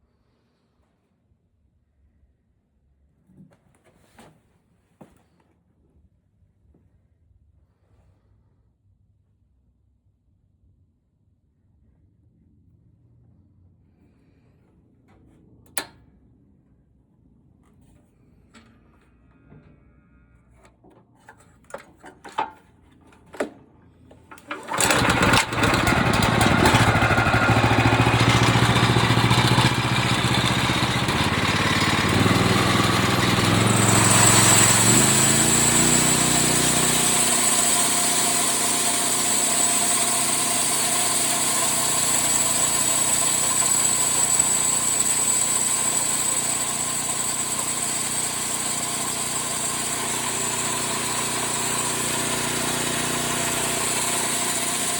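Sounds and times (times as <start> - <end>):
bandsaw motor running: 24.3 - 54.9.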